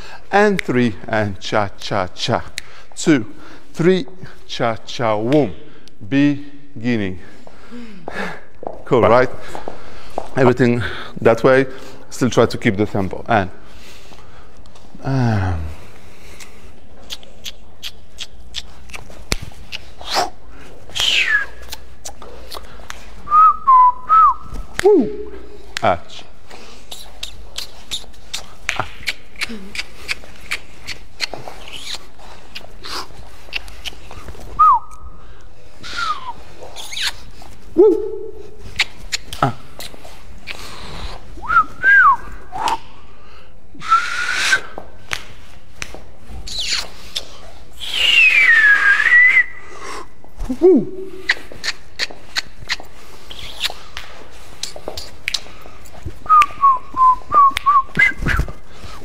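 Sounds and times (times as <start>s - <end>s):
person whistling: 21.0s - 21.8s, 23.3s - 25.4s, 34.6s - 35.2s, 35.8s - 36.4s, 37.8s - 38.4s, 41.4s - 42.9s, 43.8s - 44.8s, 47.8s - 50.0s, 56.2s - 58.6s
person whooping: 24.8s - 25.4s, 37.8s - 38.5s, 50.5s - 51.2s
soft swishes of movement: 49.6s - 59.0s.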